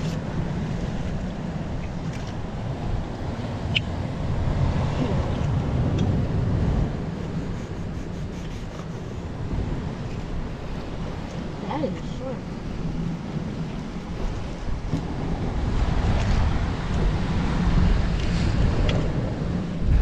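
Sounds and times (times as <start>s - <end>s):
surf washing on shore: 0.0s - 20.0s
wind buffeting microphone: 0.0s - 20.0s.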